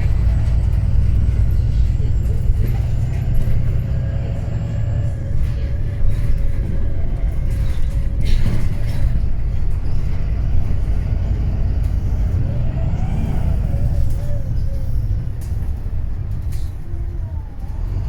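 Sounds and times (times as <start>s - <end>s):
bus diesel engine rumble: 0.0s - 18.0s.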